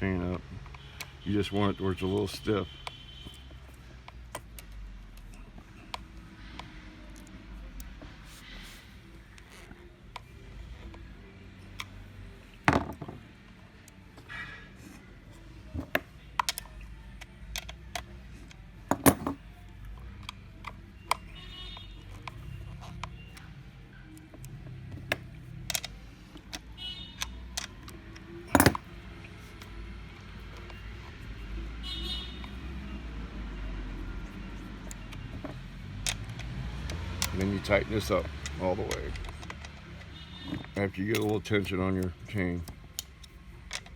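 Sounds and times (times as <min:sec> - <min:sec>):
metallic clicks of hand tools: 0:34.8 - 0:40.1, 0:41.0 - 0:43.9.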